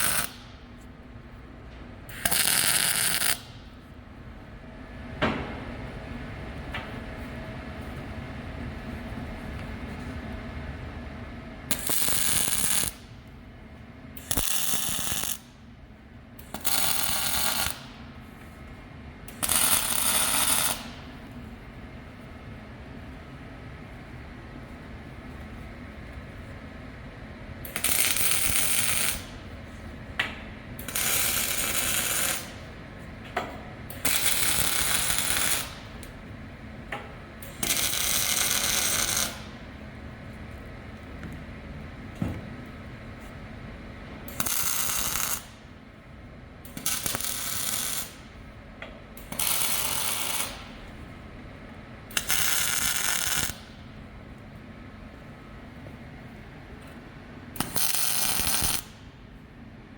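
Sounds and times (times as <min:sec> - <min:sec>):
welder crackling hiss: 0:57.6 - 0:58.8.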